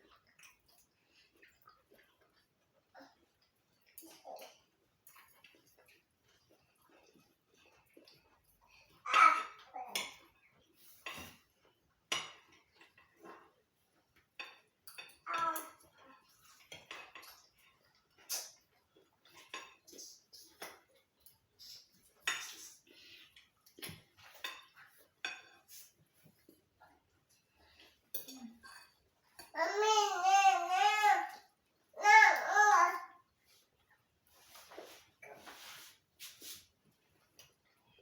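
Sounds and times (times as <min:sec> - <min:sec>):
cutlery clinking on plates: 0:09.3 - 0:26.5.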